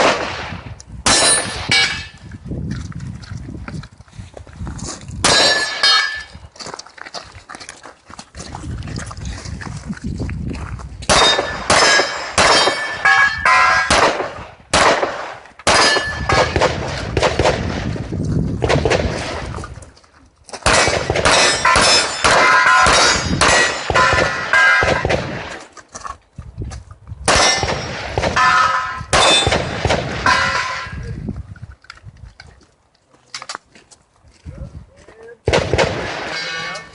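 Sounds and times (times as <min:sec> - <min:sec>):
gunshots: 0:00.0 - 0:02.2, 0:05.2 - 0:06.2, 0:11.1 - 0:18.0, 0:18.6 - 0:19.7, 0:20.6 - 0:25.7, 0:27.3 - 0:31.0, 0:35.4 - 0:36.9
steel targets ringing: 0:01.1 - 0:02.2, 0:05.3 - 0:06.3, 0:11.2 - 0:14.0, 0:15.7 - 0:16.4, 0:21.3 - 0:25.1, 0:27.4 - 0:31.0, 0:36.2 - 0:36.9.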